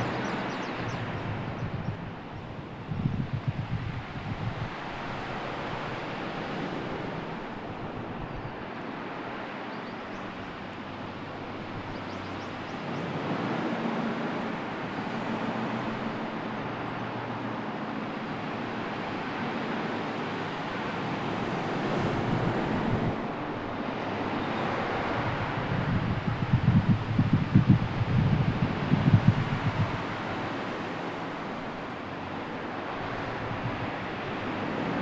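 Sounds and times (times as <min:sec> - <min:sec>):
wind buffeting on microphone: 0:00.0 - 0:08.8, 0:20.5 - 0:35.0
wind blowing: 0:00.0 - 0:09.2, 0:10.1 - 0:35.0
surf washing: 0:00.0 - 0:35.0.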